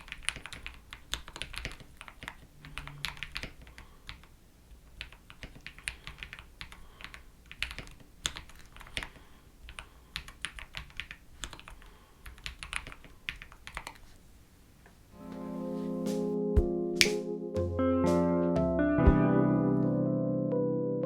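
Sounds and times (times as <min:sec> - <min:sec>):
mechanical keyboard typing: 0:00.0 - 0:04.3, 0:04.9 - 0:14.0
music: 0:15.2 - 0:21.0.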